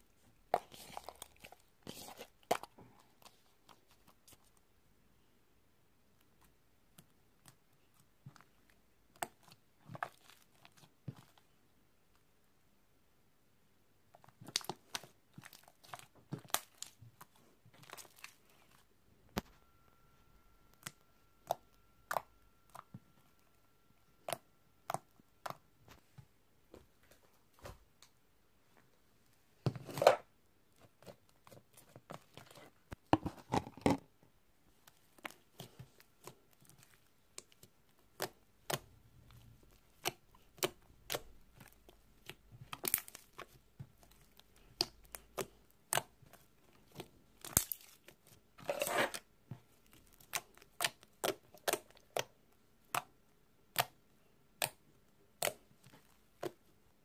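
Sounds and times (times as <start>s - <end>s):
slime popping and crackling: 14.4s - 17.2s, 35.0s - 49.1s.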